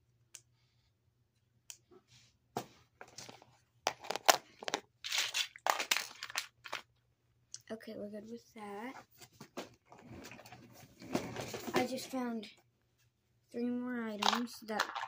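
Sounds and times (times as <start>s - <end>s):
plastic toys rustling and crinkling: 3.0s - 7.0s, 9.1s - 12.3s, 14.2s - 15.0s.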